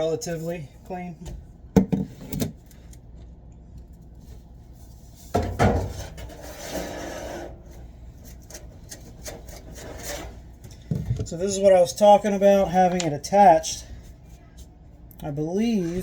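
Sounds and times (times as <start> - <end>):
low steady hum: 0.0 - 16.0
scraping and rubbing: 4.3 - 10.6.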